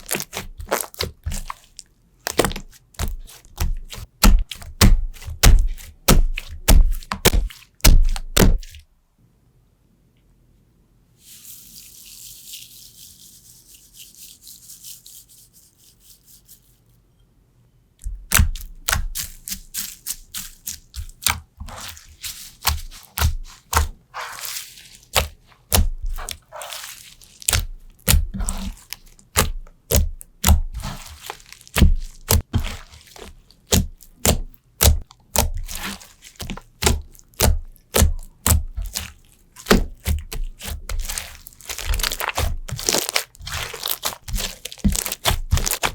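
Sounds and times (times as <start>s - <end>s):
slime popping when squeezed: 33.7s - 45.9s.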